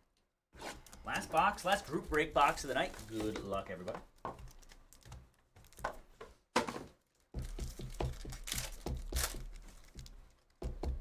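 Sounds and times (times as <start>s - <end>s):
plastic wrapping crinkling and tearing: 1.1s - 5.8s, 7.1s - 10.6s.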